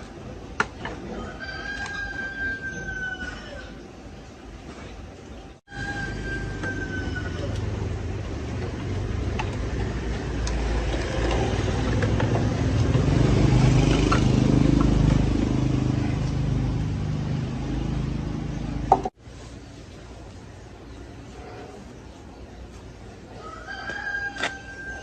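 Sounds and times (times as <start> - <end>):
small motorcycle engine running: 7.6 - 19.0.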